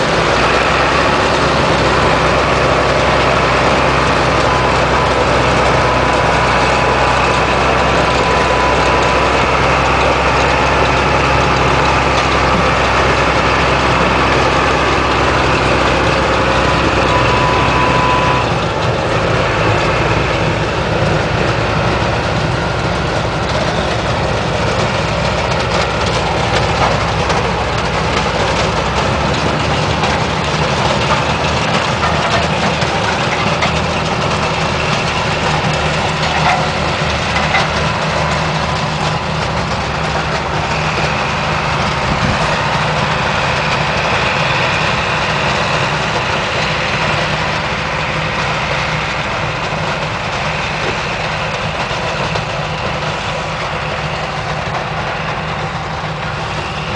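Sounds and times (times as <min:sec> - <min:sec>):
heavy farm machinery engine running: 0:00.0 - 0:56.9.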